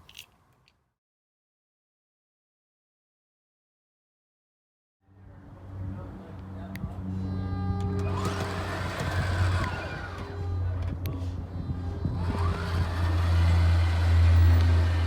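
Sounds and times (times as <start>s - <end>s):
motor whine: 7.2s - 15.0s.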